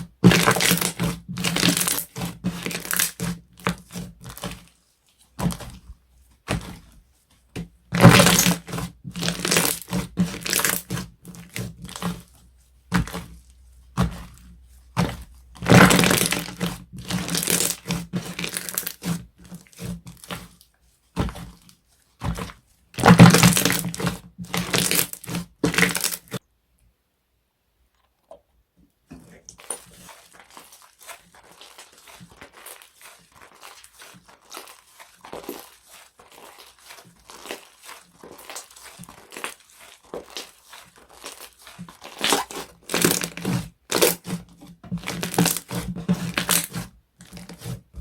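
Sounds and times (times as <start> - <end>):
slime crackling and popping: 0.1 - 4.5, 7.9 - 12.2, 15.0 - 19.1, 23.0 - 26.4, 29.6 - 47.7.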